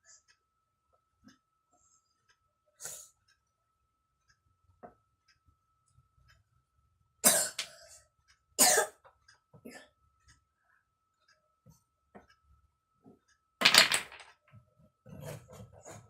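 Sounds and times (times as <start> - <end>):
child coughing: 7.2 - 7.7, 8.6 - 9.0.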